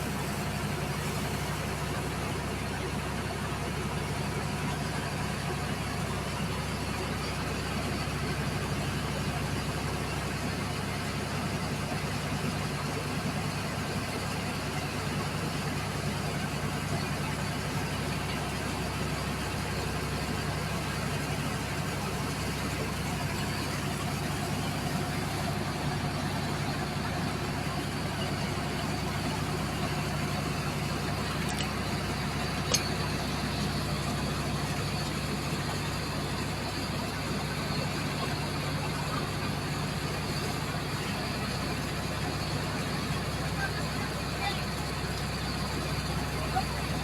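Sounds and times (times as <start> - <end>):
engine running steadily: 0.0 - 47.0
sharp click: 32.7 - 33.0.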